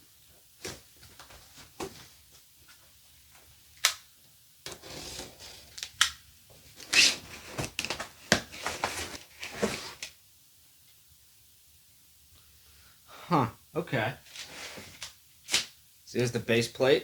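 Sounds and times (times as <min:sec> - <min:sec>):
packaging rustling: 0:06.8 - 0:10.1.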